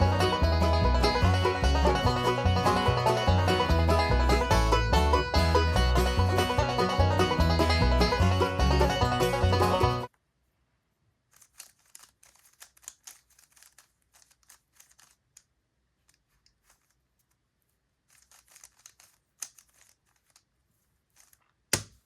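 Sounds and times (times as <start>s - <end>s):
background music: 0.0s - 10.1s
puzzle cube clicking: 11.3s - 17.4s, 18.0s - 22.0s.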